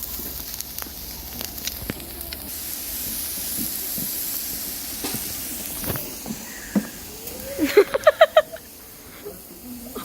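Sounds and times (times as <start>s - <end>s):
fat spattering pops: 0.0s - 8.3s
meat sizzling on a grill: 0.0s - 10.0s.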